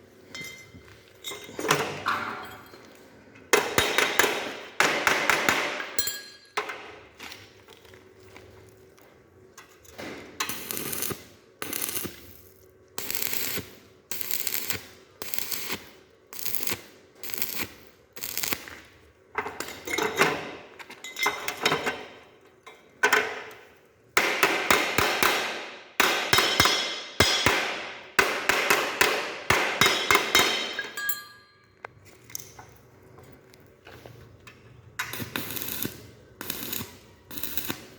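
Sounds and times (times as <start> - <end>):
welding arc crackling: 10.4 - 19.0, 35.0 - 37.9.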